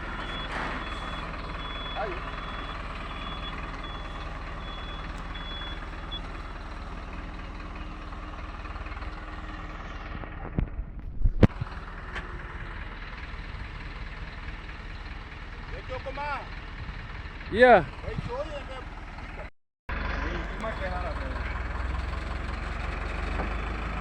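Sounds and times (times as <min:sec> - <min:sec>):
reversing alarm beeping: 0:00.0 - 0:06.5
truck engine running: 0:00.0 - 0:24.0.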